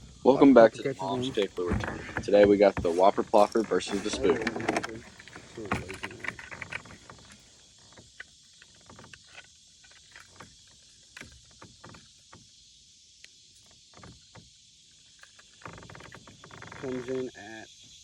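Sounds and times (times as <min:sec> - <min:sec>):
steady faint hiss: 0:00.0 - 0:18.0
light knocks and clicks: 0:01.0 - 0:12.6.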